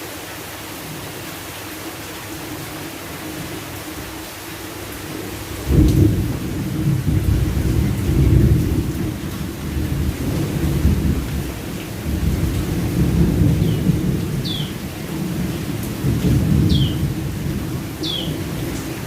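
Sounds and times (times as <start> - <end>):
steady rain: 0.0 - 19.0
thunder rumbling: 5.5 - 19.0.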